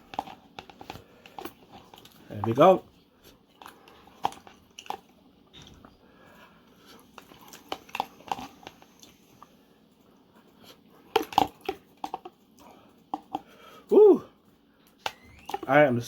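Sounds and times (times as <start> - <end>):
person chewing noodles: 3.2 - 9.6.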